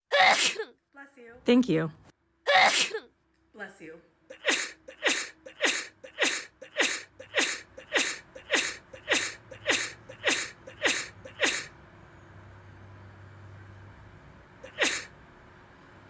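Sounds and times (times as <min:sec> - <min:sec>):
person sneezing: 0:00.1 - 0:00.7, 0:02.5 - 0:03.0, 0:04.3 - 0:11.7, 0:14.7 - 0:15.1.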